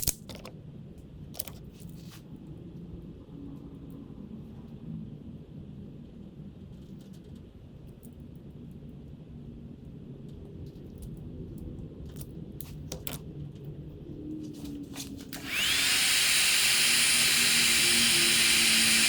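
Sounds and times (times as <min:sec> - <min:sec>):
heat gun fan whining: 0:15.0 - 0:19.0.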